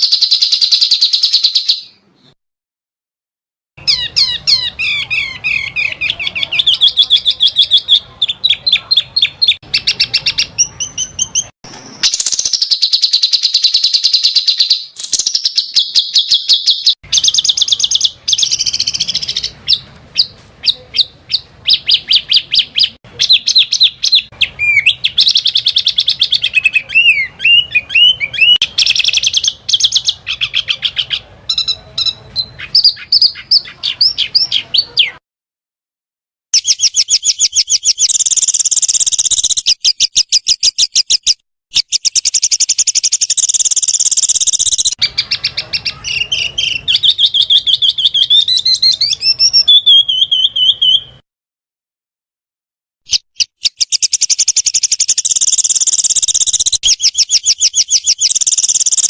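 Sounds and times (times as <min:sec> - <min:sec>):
songbirds trilling: 0:03.8 - 0:35.1, 0:41.9 - 0:51.2, 0:53.1 - 0:59.0.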